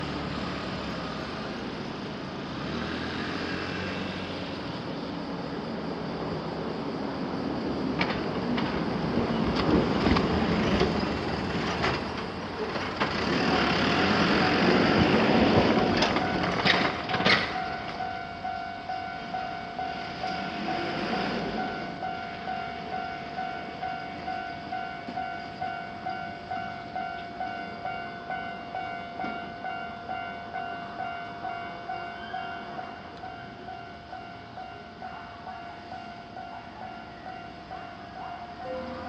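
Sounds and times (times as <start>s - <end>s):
trains running: 0.0s - 39.0s
wheel clicks over rail joints: 9.5s - 14.4s, 15.0s - 18.0s
level crossing warning bell: 13.5s - 39.0s.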